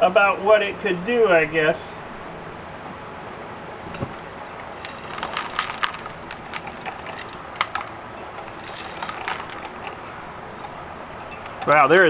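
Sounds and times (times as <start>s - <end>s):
plastic fragments rattling: 3.8s - 12.0s.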